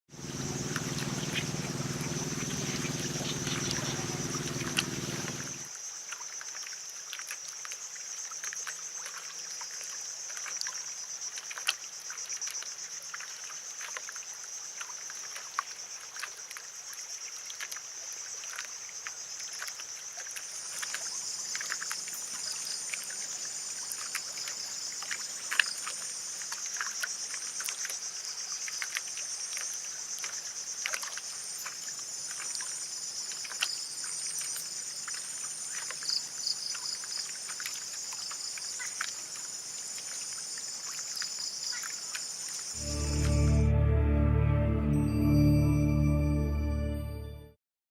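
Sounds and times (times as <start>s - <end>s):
water lapping at a boat: 0.1s - 42.8s
low mechanical hum: 0.2s - 5.7s
insects chirring: 0.2s - 42.8s.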